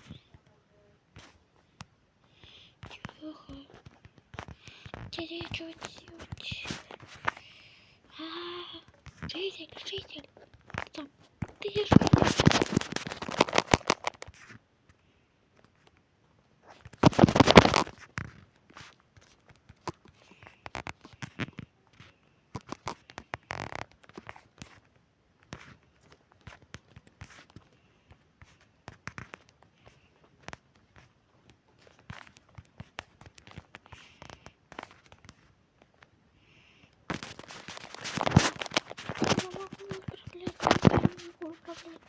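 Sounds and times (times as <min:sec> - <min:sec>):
rustling handling noises: 0:00.0 - 0:42.0
small clicks and scrapes: 0:00.0 - 0:42.0
crackling burst: 0:17.0 - 0:18.0.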